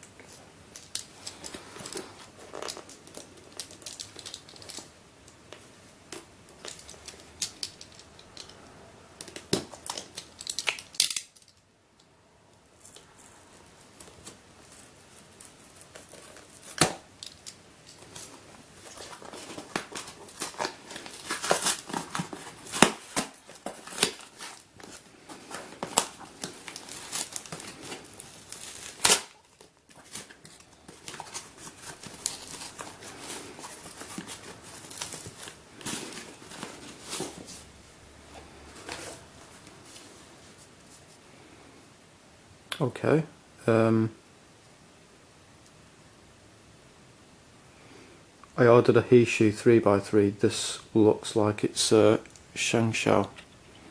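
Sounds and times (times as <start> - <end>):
packaging crinkling: 0.2 - 5.0, 9.2 - 11.6, 12.8 - 37.8
tape tearing: 12.8 - 37.7.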